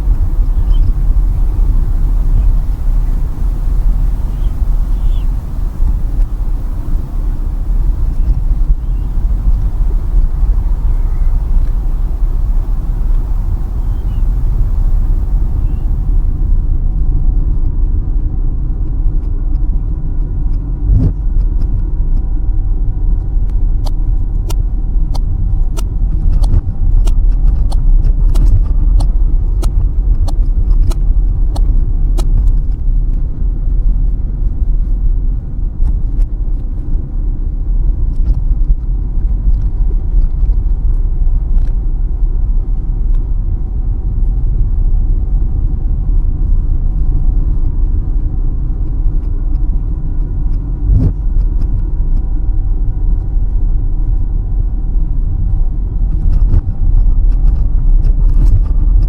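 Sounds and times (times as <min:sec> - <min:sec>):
sharp ticks: 0:00.0 - 0:16.7
car road noise rumble: 0:00.0 - 0:17.2, 0:23.6 - 0:59.0.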